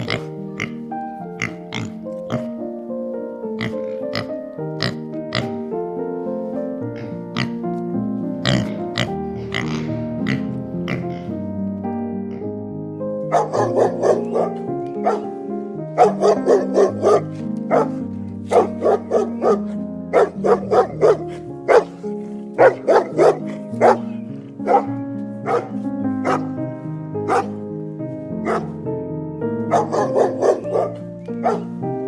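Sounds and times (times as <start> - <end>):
keyboard music: 0.0 - 32.0
dog barking: 13.3 - 15.3, 16.0 - 22.0, 22.6 - 26.5, 27.3 - 27.6, 28.4 - 28.7, 29.7 - 31.7.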